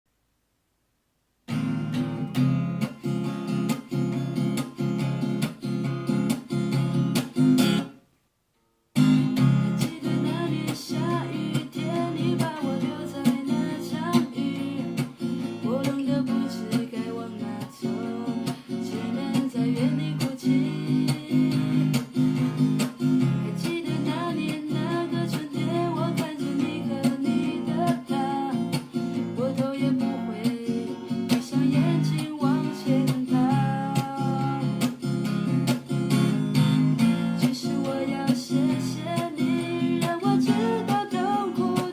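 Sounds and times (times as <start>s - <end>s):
acoustic guitar strumming: 1.5s - 8.0s, 8.9s - 41.9s
person singing: 9.7s - 22.1s, 23.3s - 35.0s, 37.3s - 41.9s.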